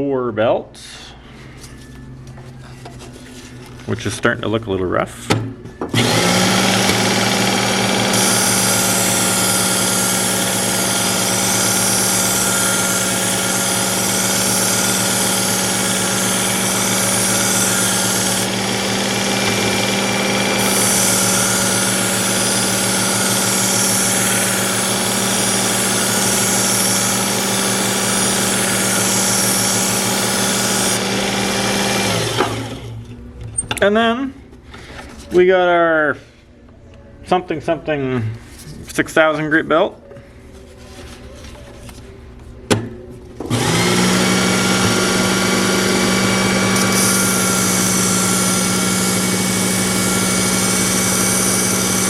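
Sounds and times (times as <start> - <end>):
belt sharpener motor running: 6.0 - 33.0, 43.5 - 52.0
blade grinding on abrasive belt: 6.0 - 33.0, 43.5 - 52.0.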